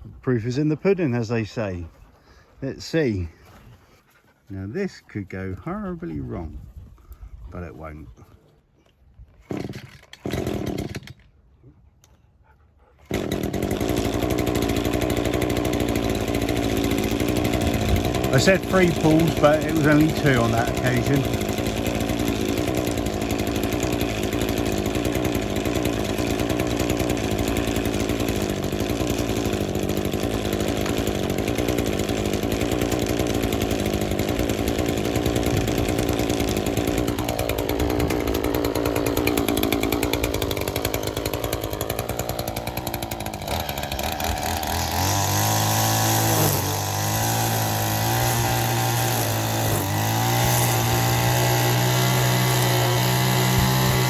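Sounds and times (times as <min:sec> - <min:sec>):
strimmer engine running: 0:13.1 - 0:54.0.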